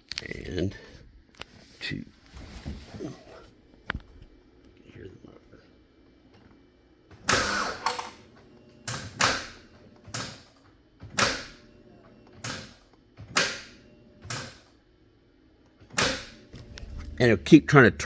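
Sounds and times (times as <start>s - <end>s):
starter motor cranking: 7.2s - 8.2s.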